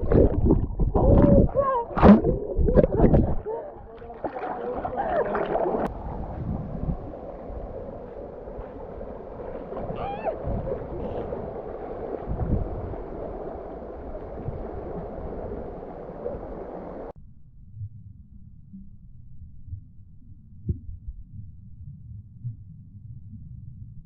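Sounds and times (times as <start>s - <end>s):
creek water rushing: 1.8s - 17.1s.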